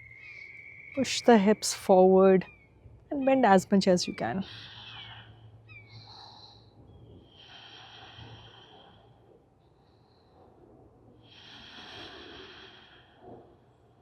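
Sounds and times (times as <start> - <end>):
person breathing slowly: 4.4 - 14.0.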